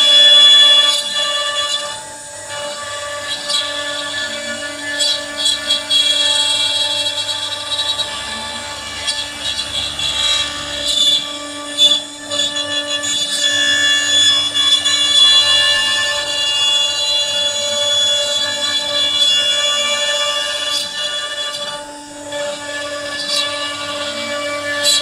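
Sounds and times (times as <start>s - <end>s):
rasping cutting noise: 0.0s - 25.0s
router spindle whining: 0.0s - 25.0s.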